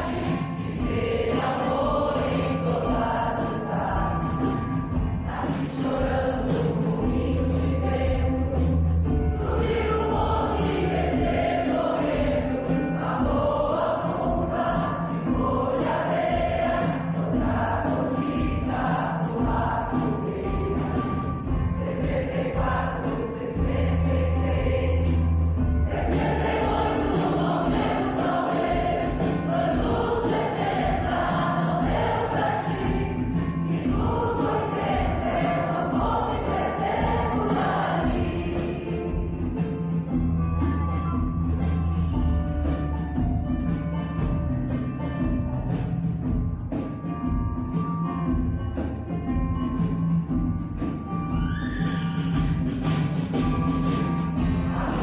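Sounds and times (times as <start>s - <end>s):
choir singing: 0.0s - 40.3s, 51.4s - 55.0s.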